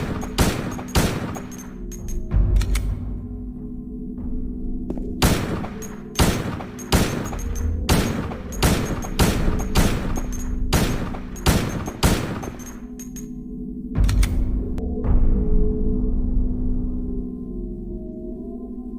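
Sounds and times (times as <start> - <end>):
pistol shots: 0.0 - 1.8, 5.2 - 12.8
low music tones: 0.0 - 18.9.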